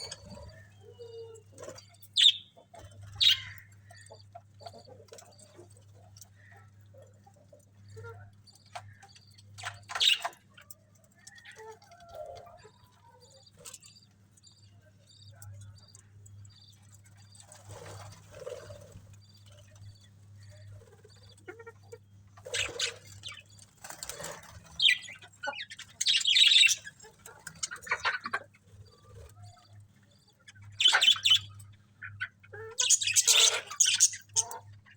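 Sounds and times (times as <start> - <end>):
budgerigars chirping: 1.6 - 4.9, 22.4 - 29.0, 30.8 - 34.7.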